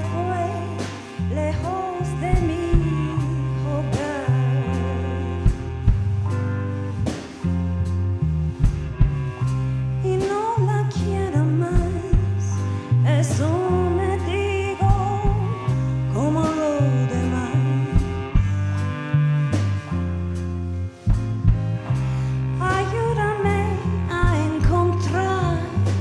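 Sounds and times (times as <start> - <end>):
person singing: 0.0 - 6.0, 10.0 - 18.4, 22.1 - 26.0
live band playing: 0.0 - 26.0.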